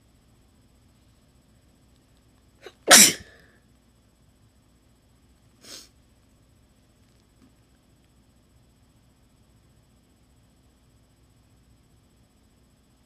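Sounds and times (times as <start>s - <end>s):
person sneezing: 2.6s - 3.5s, 5.6s - 5.9s.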